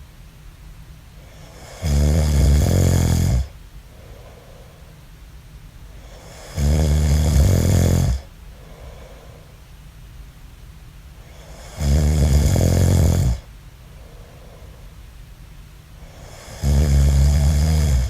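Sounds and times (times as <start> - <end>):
man snoring loudly: 1.4 - 3.5, 6.2 - 8.3, 11.6 - 13.5, 16.1 - 18.0
quiet breathing: 2.8 - 9.9, 11.1 - 18.0.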